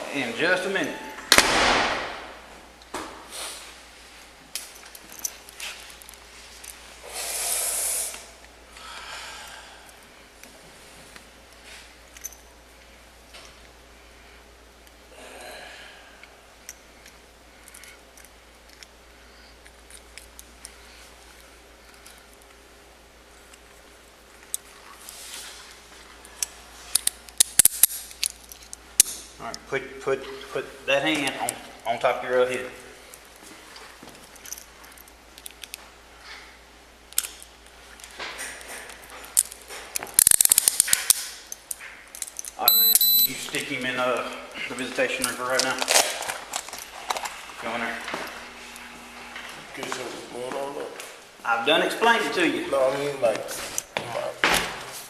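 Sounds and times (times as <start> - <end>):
steady low hum: 0.0 - 55.0
handling noise with rustling: 45.0 - 51.4.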